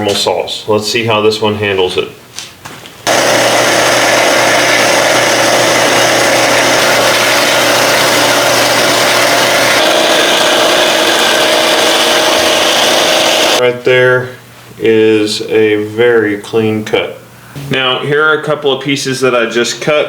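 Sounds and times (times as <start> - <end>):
bandsaw cutting steel: 3.1 - 13.6
motor hum: 3.1 - 13.6.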